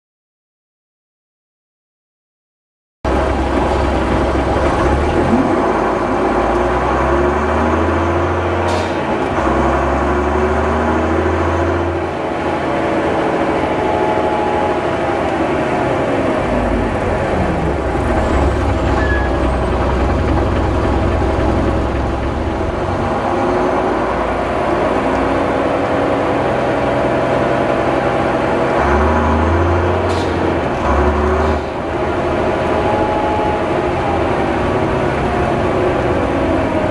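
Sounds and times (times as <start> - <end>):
bus engine running: 3.1 - 36.9.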